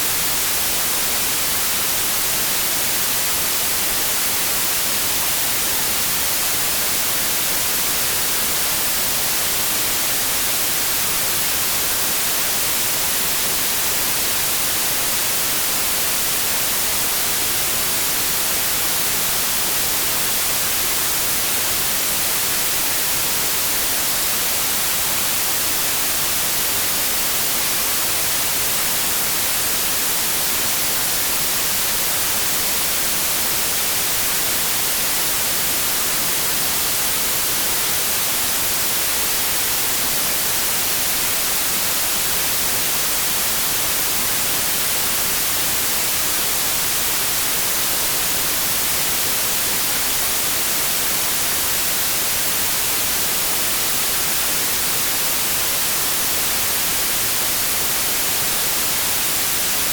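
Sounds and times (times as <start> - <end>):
white noise hiss: 0.0 - 59.9.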